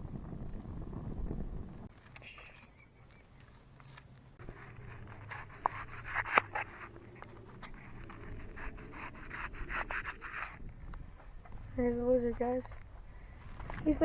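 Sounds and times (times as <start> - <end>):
scraping and rubbing: 3.7 - 14.0.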